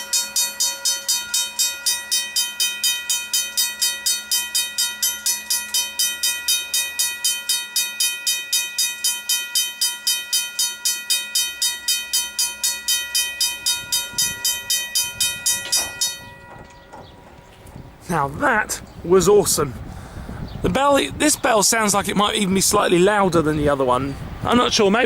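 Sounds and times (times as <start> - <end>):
level-crossing bell ringing: 0.0 - 17.0.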